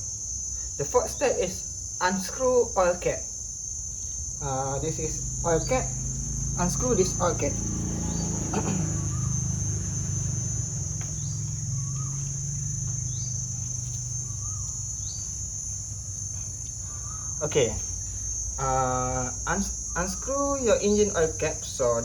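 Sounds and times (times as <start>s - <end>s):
insects trilling: 0.0s - 22.0s.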